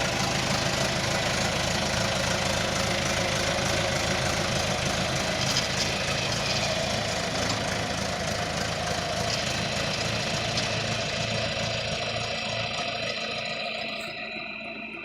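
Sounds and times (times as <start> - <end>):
backhoe engine idling: 0.0 - 15.0.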